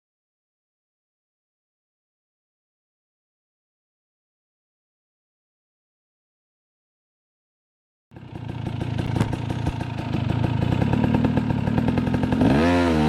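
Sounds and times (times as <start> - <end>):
motorcycle engine running: 8.1 - 13.0.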